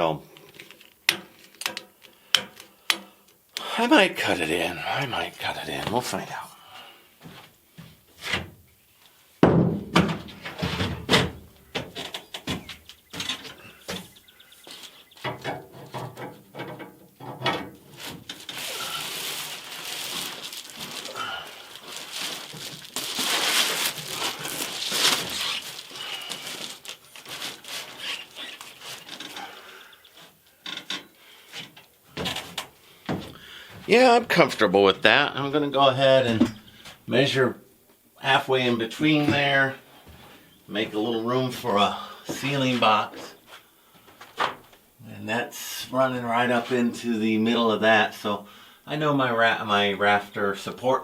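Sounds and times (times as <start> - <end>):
scraping and squeaking: 10.3 - 21.1, 21.8 - 32.7.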